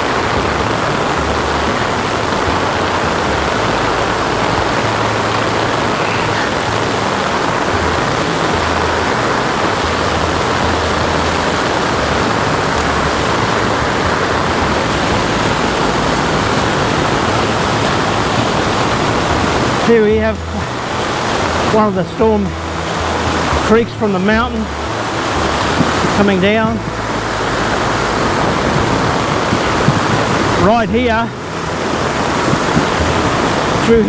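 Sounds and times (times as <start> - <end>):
floodwater rushing: 0.0 - 34.0.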